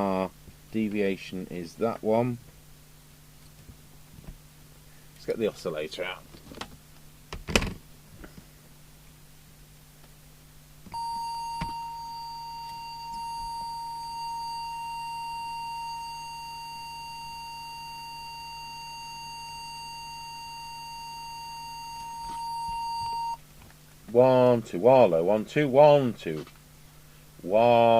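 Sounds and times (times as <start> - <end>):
steady test tone: 10.9 - 23.4.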